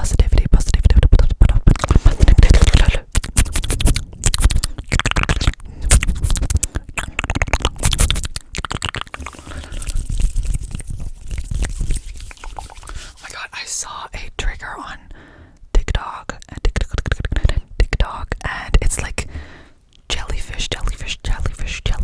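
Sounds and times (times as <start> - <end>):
wet mouth clicks and pops: 0.1 - 13.4, 15.9 - 18.4.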